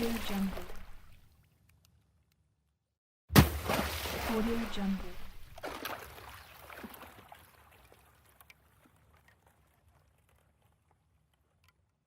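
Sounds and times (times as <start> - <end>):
water dripping and settling: 0.0 - 2.5, 3.4 - 12.0.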